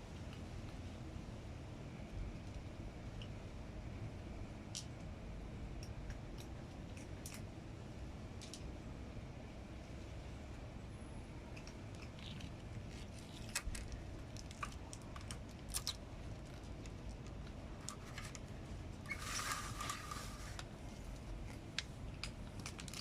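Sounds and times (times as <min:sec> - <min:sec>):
cat crunching dry food: 0:11.6 - 0:23.0
brief rustle: 0:19.1 - 0:20.7.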